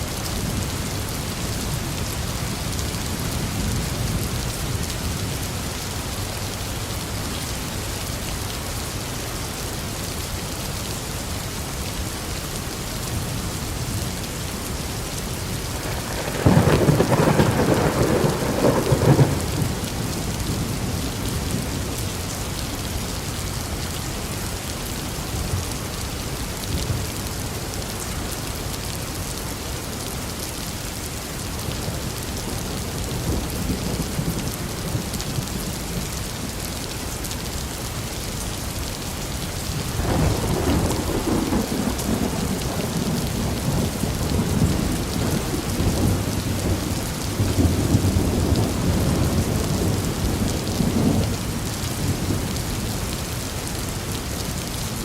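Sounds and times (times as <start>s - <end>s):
steady rain: 0.0s - 55.0s
rolling thunder: 15.8s - 20.9s, 40.0s - 51.4s.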